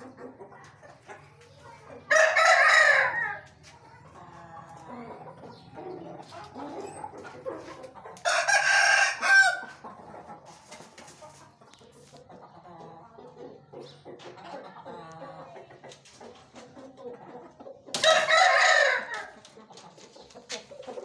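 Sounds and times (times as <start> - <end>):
chickens clucking: 0.0 - 21.0
rooster crowing: 2.1 - 3.4, 8.3 - 9.7, 18.0 - 19.3.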